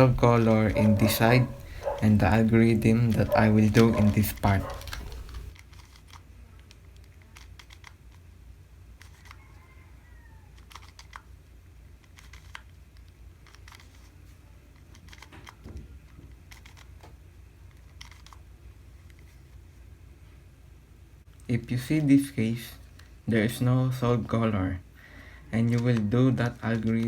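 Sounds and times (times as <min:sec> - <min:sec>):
puzzle cube plastic clicks: 0:02.8 - 0:08.3, 0:08.9 - 0:09.4, 0:10.5 - 0:15.7, 0:16.3 - 0:17.0, 0:17.6 - 0:19.3, 0:25.6 - 0:27.0.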